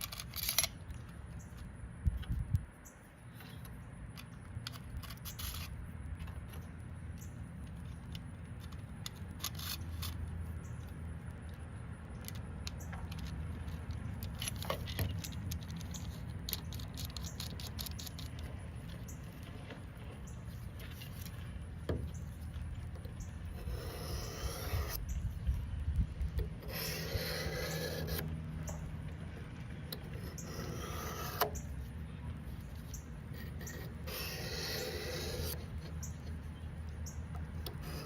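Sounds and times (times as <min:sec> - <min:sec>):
steady low hum: 0:00.0 - 0:38.0
knife scraping on sharpening rod: 0:23.5 - 0:25.1, 0:26.5 - 0:28.3, 0:30.0 - 0:31.7, 0:32.9 - 0:36.3, 0:37.6 - 0:38.0.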